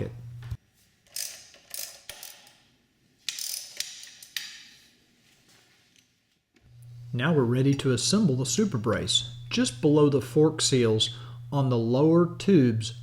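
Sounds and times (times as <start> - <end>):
socket ratchet clicking: 1.1 - 2.6, 3.3 - 4.5.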